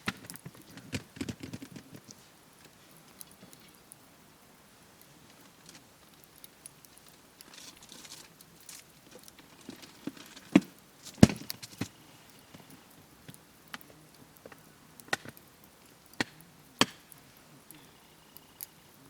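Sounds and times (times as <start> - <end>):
firewood knocking: 0.0 - 2.1, 7.8 - 15.4, 16.1 - 17.2.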